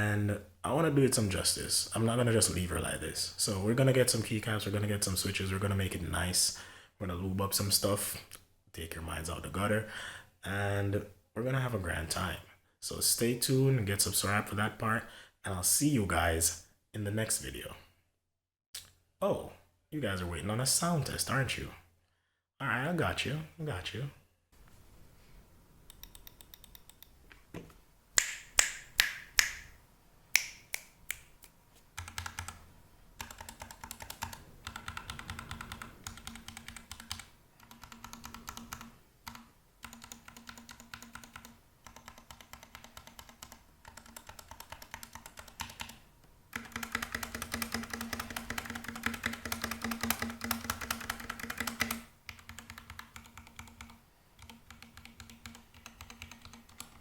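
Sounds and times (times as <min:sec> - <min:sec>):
mechanical keyboard typing: 0:32.0 - 0:32.6, 0:33.2 - 0:57.0.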